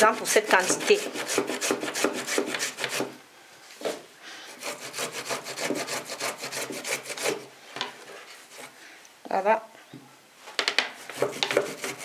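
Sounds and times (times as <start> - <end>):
ginger rasping on a grater: 0.0 - 3.1, 4.5 - 7.4, 11.0 - 12.0.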